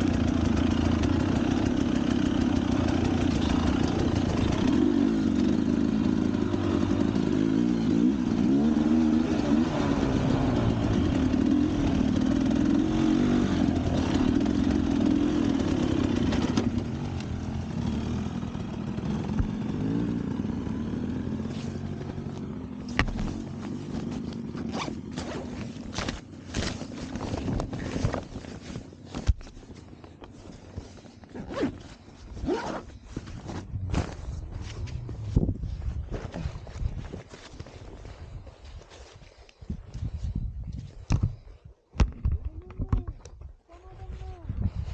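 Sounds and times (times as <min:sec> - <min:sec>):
motorcycle engine revving: 0:00.0 - 0:29.3, 0:31.4 - 0:37.1.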